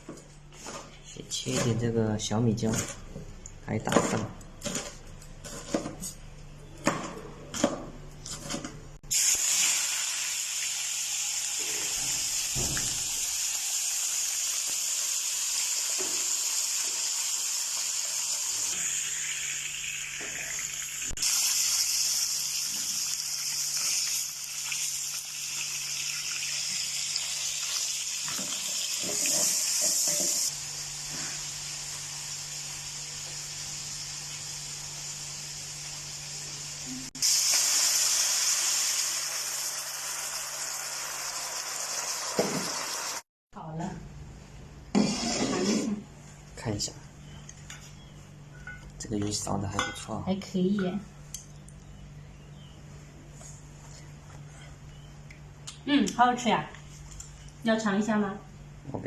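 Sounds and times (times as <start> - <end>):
food sizzling in hot oil: 9.1 - 43.3.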